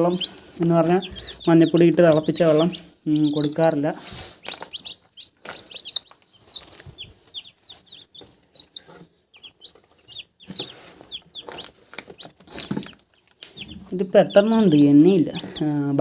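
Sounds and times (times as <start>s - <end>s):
chicks peeping: 0.0s - 16.0s.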